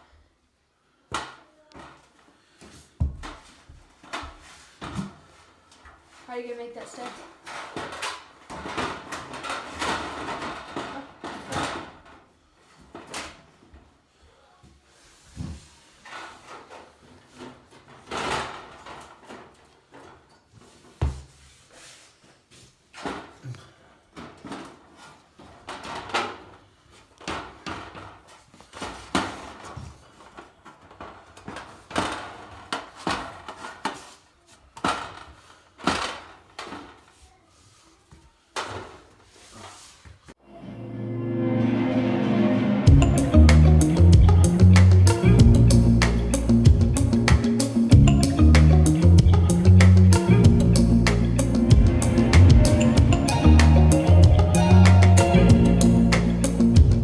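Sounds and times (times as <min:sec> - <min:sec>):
heavy thuds: 0:56.8 - 0:57.0.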